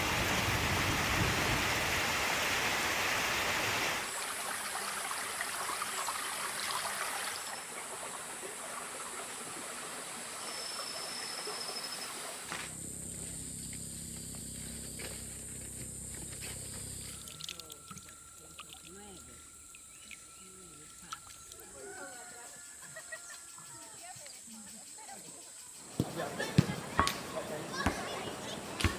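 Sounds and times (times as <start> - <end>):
stream water rushing: 0.0 - 12.7, 25.9 - 28.9
insects droning: 0.0 - 28.9
low steady hum: 12.6 - 21.6.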